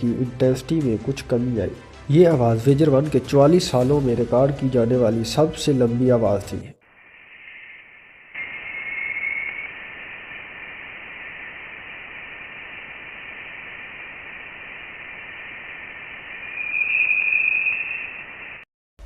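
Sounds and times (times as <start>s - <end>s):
steady narrow-band hiss: 6.8s - 18.6s.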